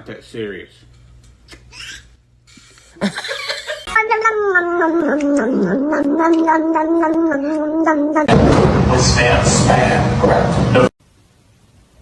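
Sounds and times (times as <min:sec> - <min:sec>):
cat yowling: 0:03.9 - 0:08.3.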